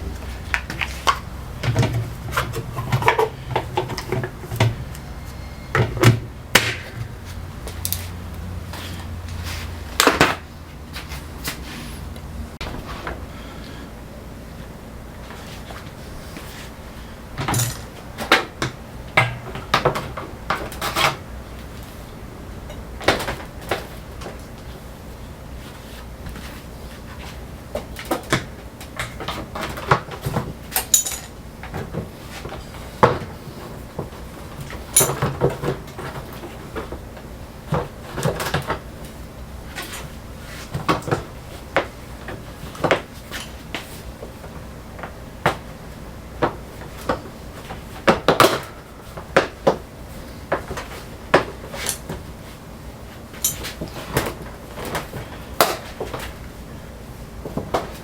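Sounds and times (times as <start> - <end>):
tools and metal parts clanking: 0.1 - 10.5, 17.4 - 18.3, 29.0 - 33.3, 34.6 - 37.0, 53.4 - 55.9.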